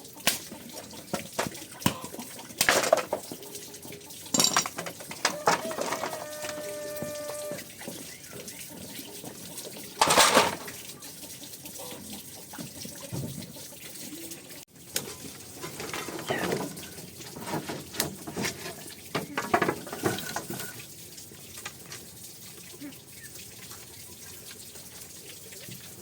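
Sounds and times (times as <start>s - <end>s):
water running and splashing: 0.0s - 26.0s.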